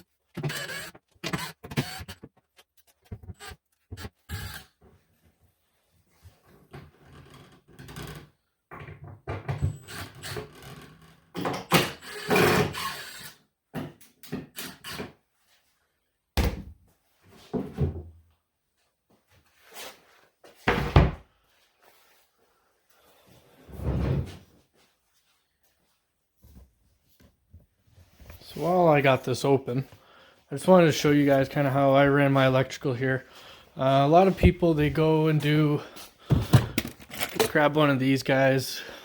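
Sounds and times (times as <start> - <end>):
wooden tool cart thunks and scraping: 20.6 - 21.2, 36.2 - 37.6.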